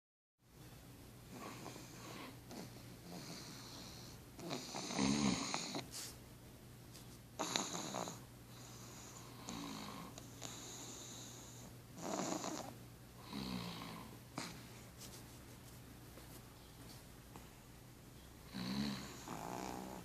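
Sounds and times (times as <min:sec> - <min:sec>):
dog snoring: 0:01.3 - 0:05.9, 0:07.4 - 0:14.7, 0:18.4 - 0:20.0.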